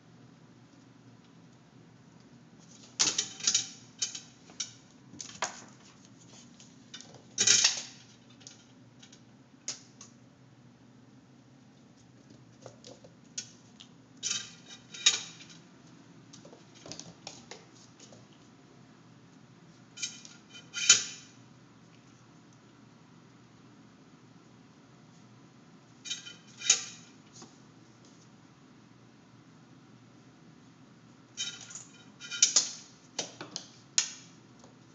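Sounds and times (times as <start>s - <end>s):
metal toy clattering: 14.2s - 15.6s, 20.0s - 21.3s, 26.1s - 27.2s, 31.4s - 32.7s.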